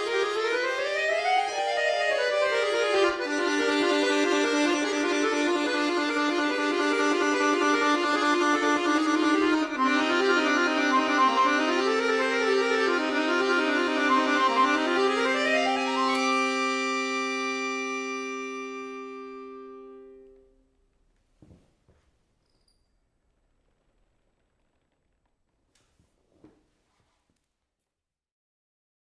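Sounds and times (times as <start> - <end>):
solo accordion playing: 0.0 - 20.5.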